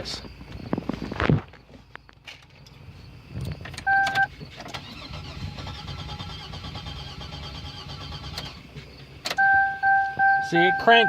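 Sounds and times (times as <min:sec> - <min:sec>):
starter cranking engine: 0:04.6 - 0:08.7
warning chime: 0:09.4 - 0:11.0.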